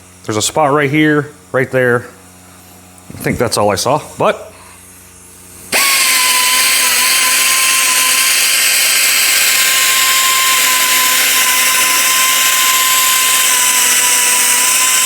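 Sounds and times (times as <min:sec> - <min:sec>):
air polisher whining: 0:05.4 - 0:15.0.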